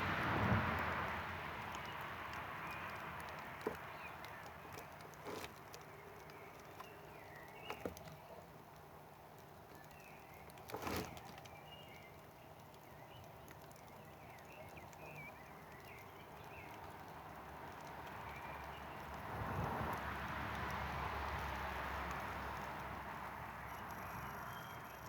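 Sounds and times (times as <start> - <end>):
campfire crackling and popping: 0.0 - 25.0
faint bird chirps: 23.6 - 25.0.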